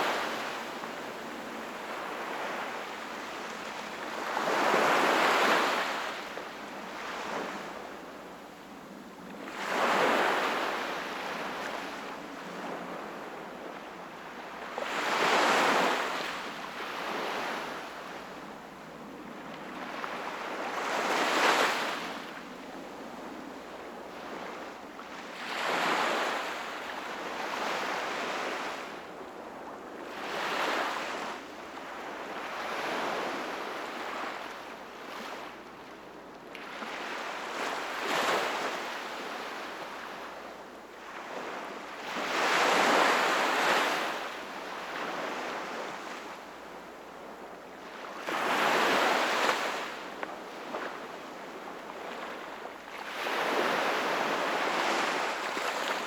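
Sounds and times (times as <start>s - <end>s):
sea waves breaking on shore: 0.0s - 8.1s, 36.6s - 56.0s.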